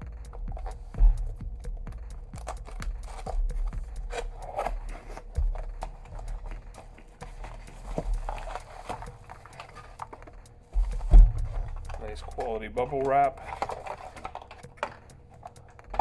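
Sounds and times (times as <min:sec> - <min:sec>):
dull knocks: 0:00.0 - 0:09.3, 0:10.8 - 0:12.6
packaging rustling and crinkling: 0:02.2 - 0:16.0.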